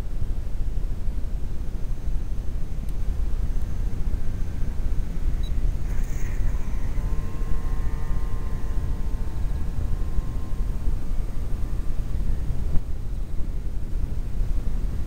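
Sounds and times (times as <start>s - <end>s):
wind rumbling on microphone: 0.0s - 15.0s
model plane motor whine: 0.1s - 15.0s.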